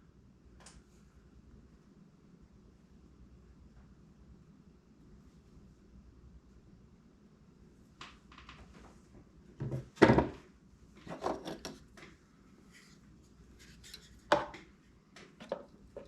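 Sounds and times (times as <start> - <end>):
tools knocking: 14.3 - 14.6, 15.4 - 16.0
clatter of parts and tools: 15.4 - 16.0.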